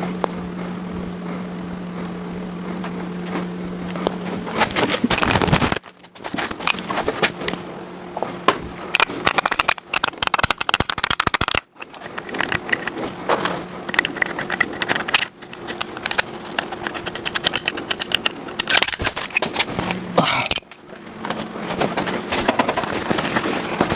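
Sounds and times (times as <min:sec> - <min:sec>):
faint steady hum: 0:00.0 - 0:23.9
rapid metallic clicking of hand tool: 0:08.9 - 0:13.0, 0:13.8 - 0:19.6.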